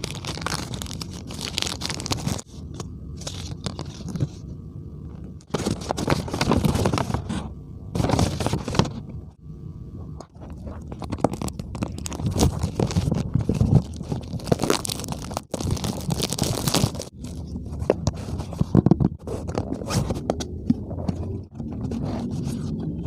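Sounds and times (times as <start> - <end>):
packaging being opened by hand: 0.0 - 4.4, 5.4 - 9.0, 10.3 - 20.4.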